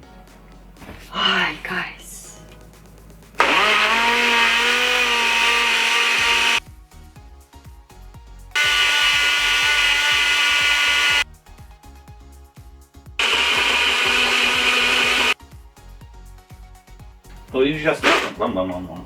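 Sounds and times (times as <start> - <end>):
background music with light beat: 0.0 - 19.0
blender motor chopping: 3.4 - 6.6, 8.6 - 11.2, 13.2 - 15.4, 18.0 - 18.5.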